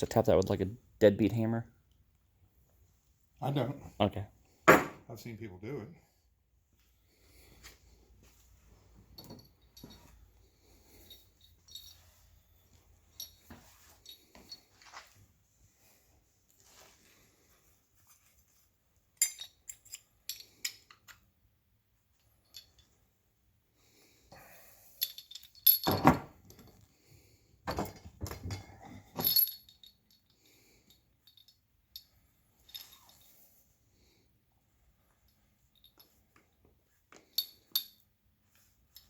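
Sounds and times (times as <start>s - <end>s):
metal tools and parts clinking: 8.9s - 15.2s, 18.1s - 21.3s, 22.2s - 23.1s, 24.8s - 26.9s, 27.7s - 33.5s, 35.1s - 36.6s, 37.2s - 39.0s.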